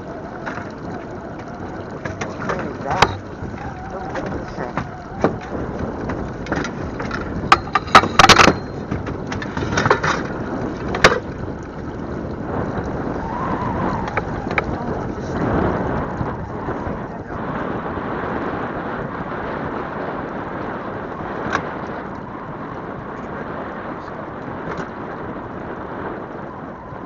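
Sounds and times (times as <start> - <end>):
wind rushing over microphone: 0.0 - 27.0
sharp knocks and clatters: 6.1 - 11.3.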